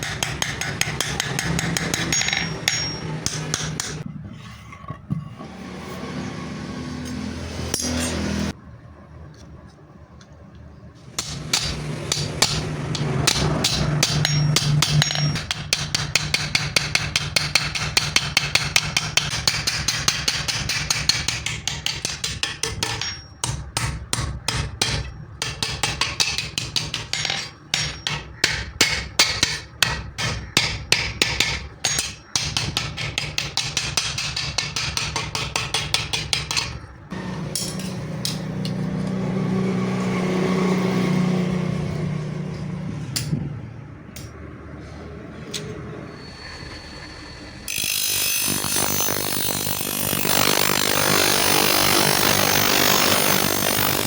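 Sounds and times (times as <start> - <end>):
hammer striking metal: 0.0 - 4.1, 7.0 - 8.5, 11.1 - 40.0.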